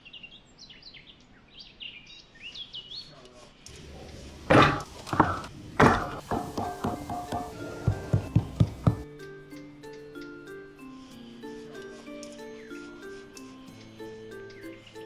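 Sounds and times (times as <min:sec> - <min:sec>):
small birds chirping: 0:00.0 - 0:04.3, 0:11.2 - 0:15.0
loud knocks: 0:04.4 - 0:09.0
music: 0:05.8 - 0:15.0.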